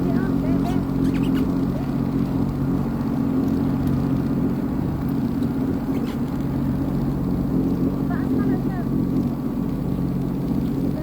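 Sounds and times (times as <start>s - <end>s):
watercraft engine humming: 0.0s - 11.0s.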